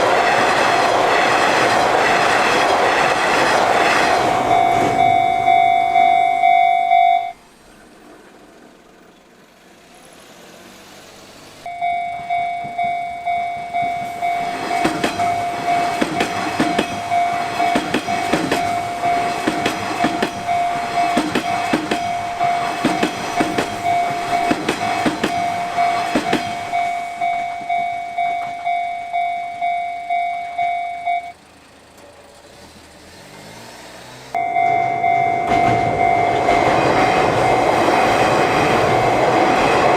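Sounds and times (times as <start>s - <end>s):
train wheels clacking over rail joints: 0.0s - 5.6s, 12.6s - 28.8s, 35.1s - 39.9s
level crossing warning bell: 2.0s - 7.4s, 11.7s - 31.4s, 34.4s - 39.9s.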